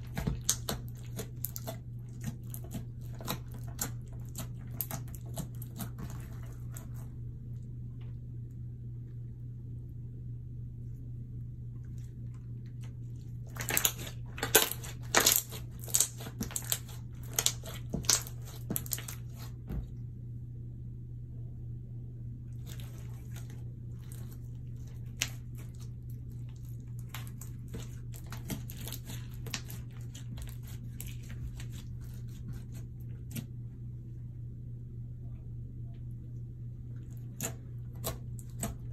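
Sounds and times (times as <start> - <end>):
low hum: 0.0 - 38.9
slime squishing wet clicks: 12.8 - 19.2.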